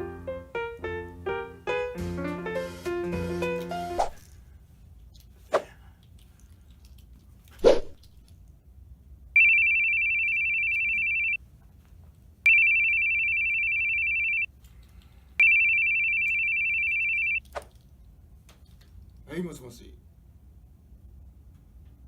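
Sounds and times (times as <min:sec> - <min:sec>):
telephone ringing: 0:09.4 - 0:11.4, 0:12.5 - 0:14.5, 0:15.4 - 0:17.4.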